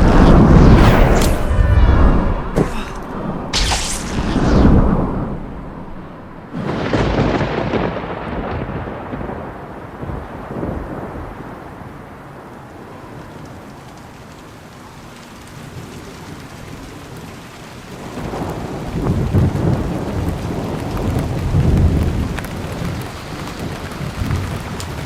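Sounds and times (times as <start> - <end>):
rolling thunder: 0.0 - 11.6
rain falling: 5.3 - 25.0.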